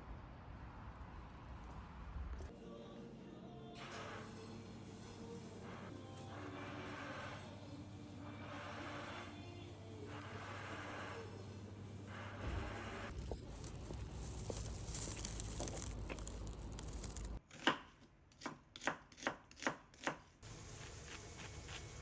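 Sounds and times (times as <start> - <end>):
knife chopping on cutting board: 17.5 - 20.2.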